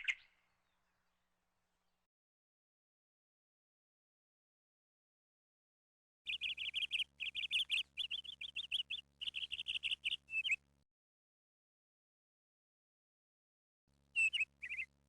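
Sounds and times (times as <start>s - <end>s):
small bird chirping rapidly: 0.0s - 0.8s, 6.3s - 10.7s, 14.1s - 15.0s.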